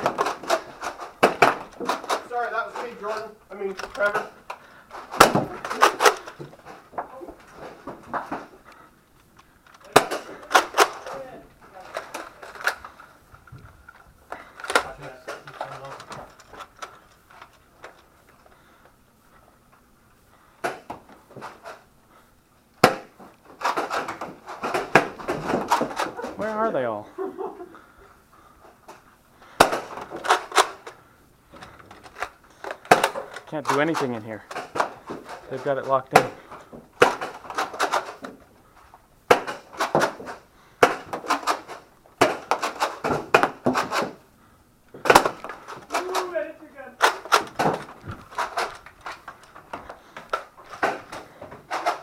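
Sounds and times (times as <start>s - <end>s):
foam balls hitting hard surfaces: 0.0s - 8.8s, 9.7s - 13.0s, 20.6s - 21.8s, 22.8s - 26.9s, 28.9s - 38.6s, 39.2s - 44.3s, 44.9s - 52.0s
loud crack: 0.0s - 13.1s, 22.8s - 26.5s, 28.9s - 31.0s, 31.6s - 38.4s, 39.2s - 44.2s, 44.9s - 52.0s.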